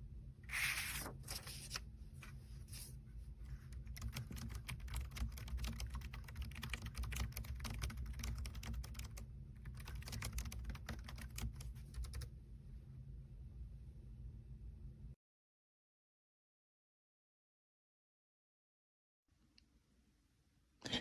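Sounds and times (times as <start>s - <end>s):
fast typing on keyboard: 3.6s - 12.3s.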